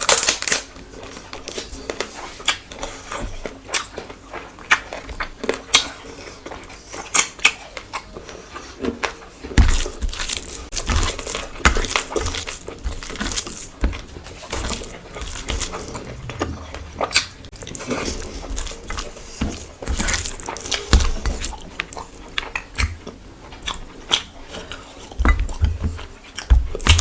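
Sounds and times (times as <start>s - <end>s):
chewing with wet mouth smacks: 1.8s - 27.0s.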